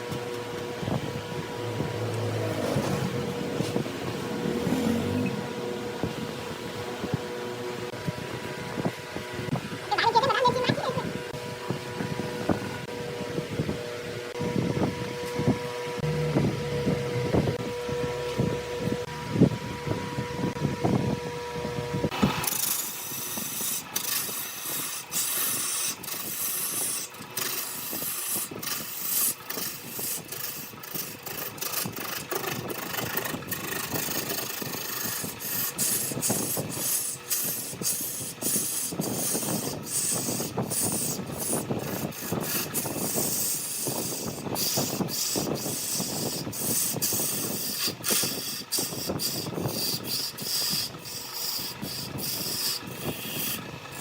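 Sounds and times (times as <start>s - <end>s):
wood lathe scraping hiss: 0.0s - 8.0s, 22.1s - 54.0s.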